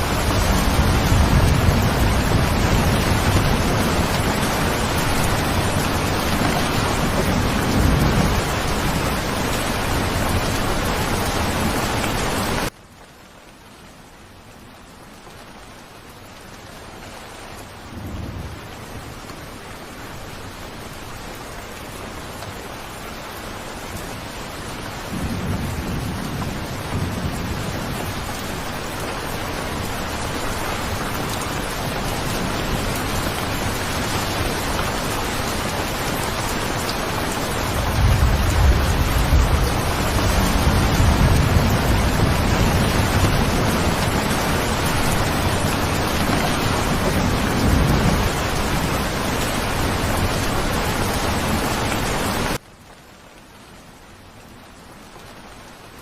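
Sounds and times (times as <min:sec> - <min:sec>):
thunder rumbling: 0:00.0 - 0:12.7, 0:25.0 - 0:52.6
steady rain: 0:00.0 - 0:56.0.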